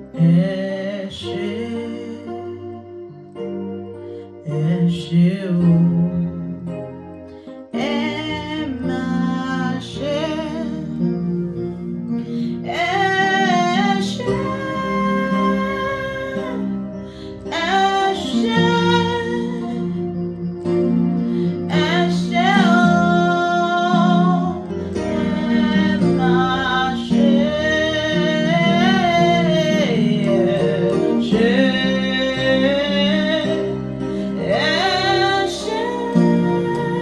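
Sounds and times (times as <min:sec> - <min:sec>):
guitar chord backing: 0:00.0 - 0:37.0
person singing long wavering notes: 0:07.8 - 0:20.5, 0:21.3 - 0:37.0.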